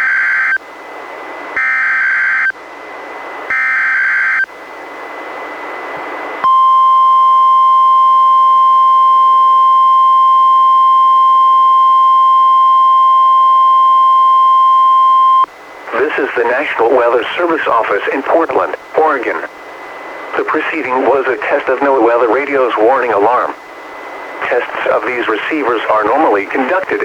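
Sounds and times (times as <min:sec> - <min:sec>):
steady alarm tone: 0:01.6 - 0:02.6, 0:03.5 - 0:04.5, 0:06.4 - 0:16.1
radio hiss: 0:15.2 - 0:27.0.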